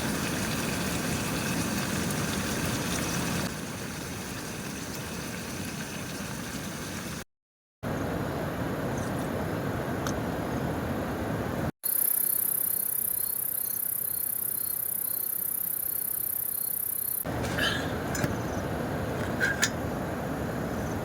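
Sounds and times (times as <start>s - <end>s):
insect chirp: 11.8s - 17.3s
crickets trilling: 11.8s - 18.7s.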